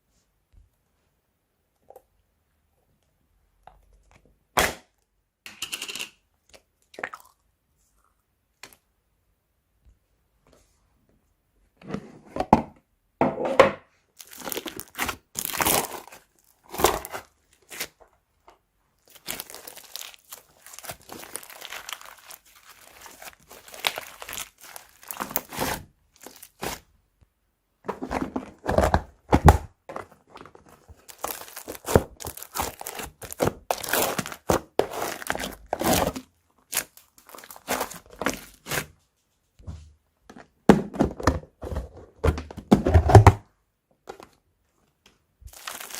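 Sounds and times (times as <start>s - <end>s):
crunchy slime crackling: 14.2s - 18.0s, 19.0s - 26.9s, 30.8s - 38.8s, 45.5s - 45.9s.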